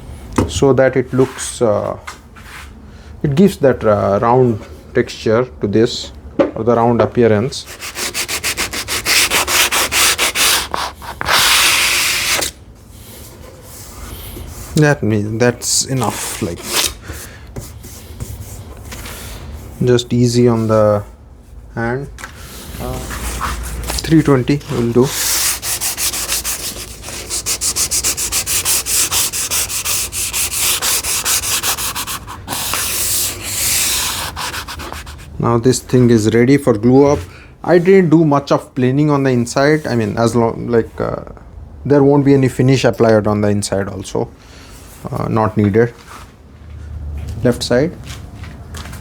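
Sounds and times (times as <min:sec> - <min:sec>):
sandpaper on wood strokes: 0:07.7 - 0:12.5, 0:24.9 - 0:35.3.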